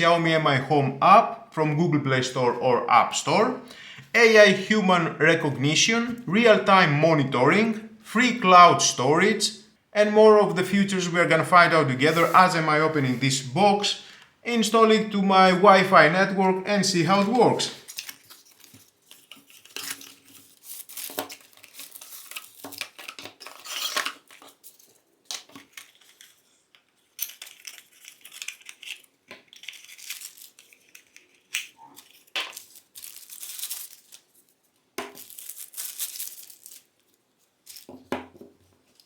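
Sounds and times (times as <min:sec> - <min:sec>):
cardboard box being unpacked: 0:17.9 - 0:24.9.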